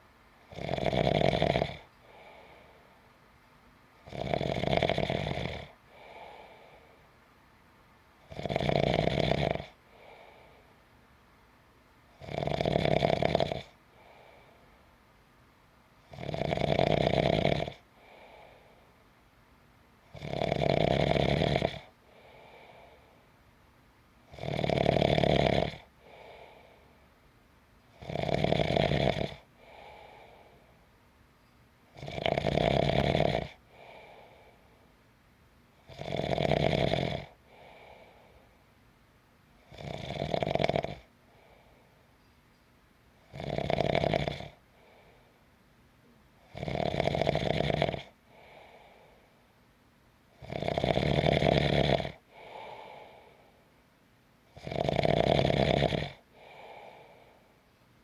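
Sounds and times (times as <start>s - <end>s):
person snoring: 0.5s - 2.5s, 4.1s - 6.7s, 8.3s - 10.4s, 12.2s - 14.2s, 16.1s - 18.6s, 20.2s - 23.0s, 24.3s - 26.7s, 28.0s - 30.6s, 32.0s - 34.5s, 35.9s - 38.4s, 39.7s - 41.1s, 43.3s - 44.6s, 46.5s - 49.1s, 50.4s - 53.4s, 54.6s - 57.4s
soft breath: 1.8s - 3.6s, 5.7s - 7.3s, 9.7s - 11.1s, 13.8s - 15.2s, 17.8s - 19.2s, 21.9s - 23.5s, 25.9s - 27.2s, 29.4s - 31.6s, 33.6s - 35.1s, 37.3s - 38.8s, 41.1s - 42.8s, 44.6s - 45.6s, 48.2s - 49.6s, 52.2s - 53.8s, 56.2s - 58.0s.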